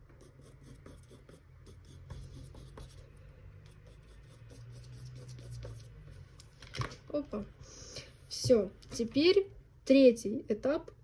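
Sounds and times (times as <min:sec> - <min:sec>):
oil pastel scratching on paper: 0:00.1 - 0:06.3.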